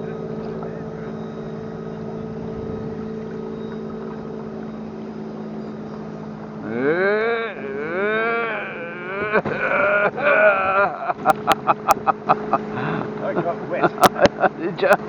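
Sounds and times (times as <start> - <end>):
motorboat engine humming: 0.0 - 15.0.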